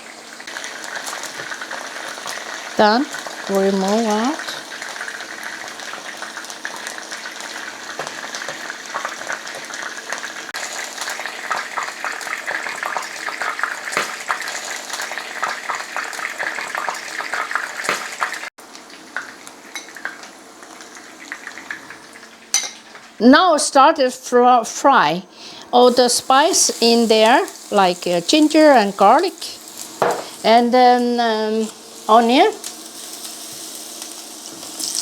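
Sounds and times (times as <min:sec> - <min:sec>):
chicken sizzling in oil: 0:00.0 - 0:23.2, 0:25.4 - 0:35.0
oil crackling pops: 0:13.4 - 0:15.1, 0:15.7 - 0:18.4.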